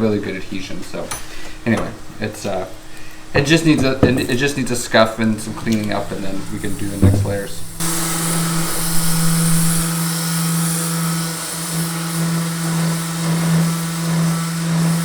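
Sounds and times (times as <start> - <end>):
power sander running: 5.7 - 15.0.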